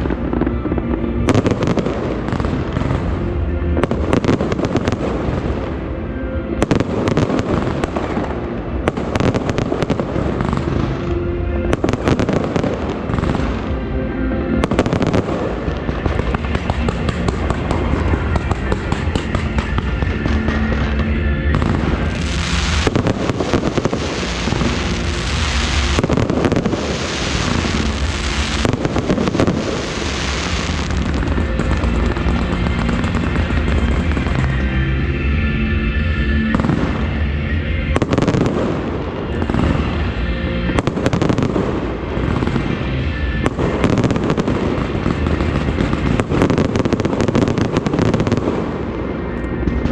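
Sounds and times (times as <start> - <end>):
fireworks banging and crackling: 0.0 - 49.9
music playing: 0.0 - 49.9.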